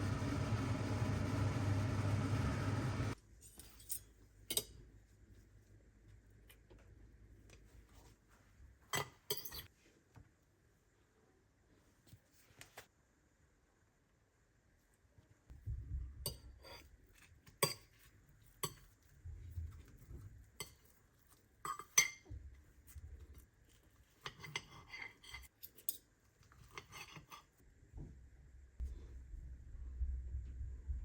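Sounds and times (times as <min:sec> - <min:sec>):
cutlery and crockery clinking: 0:08.9 - 0:09.7, 0:17.5 - 0:18.0, 0:21.7 - 0:22.3, 0:24.2 - 0:27.5.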